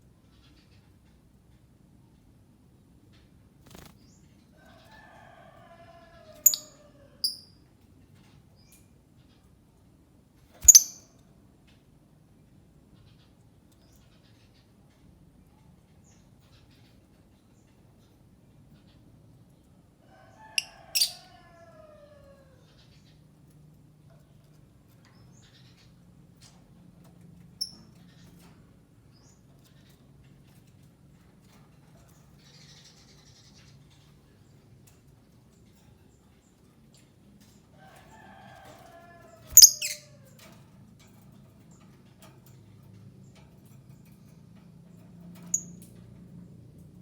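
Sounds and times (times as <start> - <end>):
lovebird calling: 10.6 - 11.0, 39.5 - 40.1.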